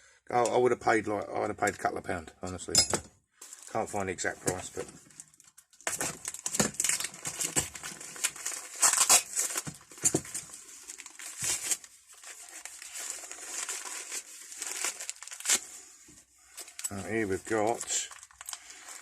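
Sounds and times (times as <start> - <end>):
packaging crinkling: 4.4 - 19.0.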